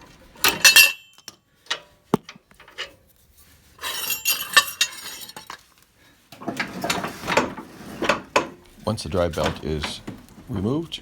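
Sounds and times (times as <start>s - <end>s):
small metal parts clinking: 0.4s - 1.8s, 3.8s - 5.6s.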